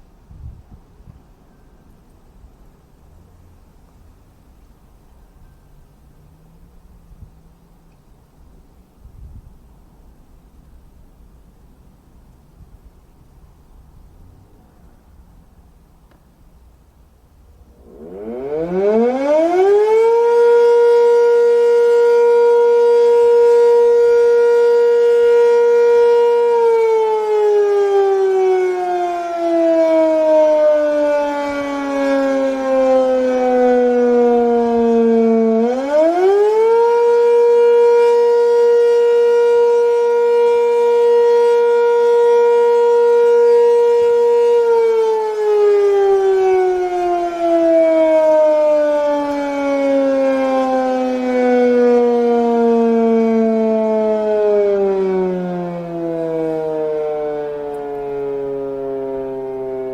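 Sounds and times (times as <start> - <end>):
warning siren wailing: 17.7 - 59.9.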